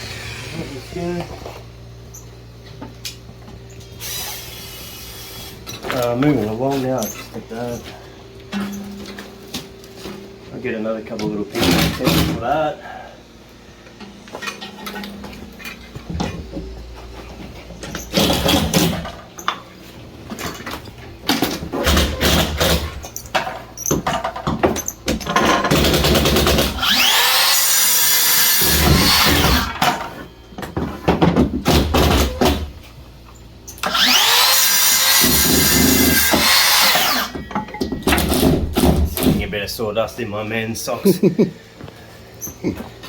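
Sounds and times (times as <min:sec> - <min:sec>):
power saw cutting timber: 0:00.0 - 0:01.4, 0:25.8 - 0:29.9, 0:33.8 - 0:37.4.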